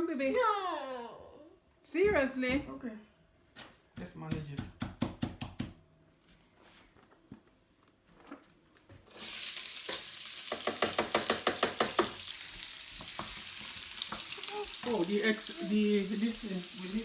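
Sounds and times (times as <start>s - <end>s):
vegetables sizzling in oil: 9.1s - 17.0s
spatula stirring against pan: 9.4s - 17.0s.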